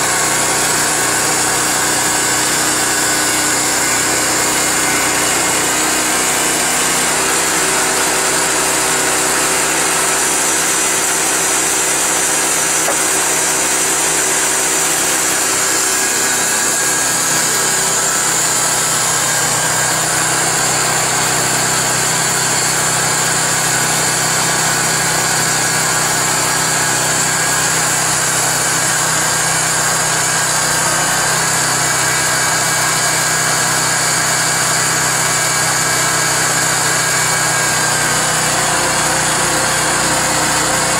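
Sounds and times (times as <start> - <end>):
band blade sawing through log: 0.0 - 40.9
sawmill engine under load: 0.0 - 40.9.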